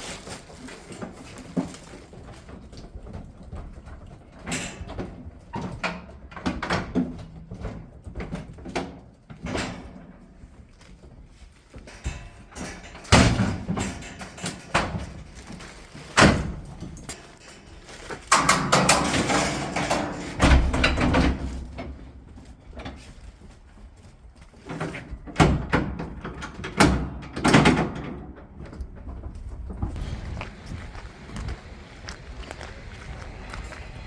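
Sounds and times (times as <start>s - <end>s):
metal rattling: 11.8s - 22.7s
metal gates banging shut: 11.9s - 22.2s, 25.3s - 28.4s.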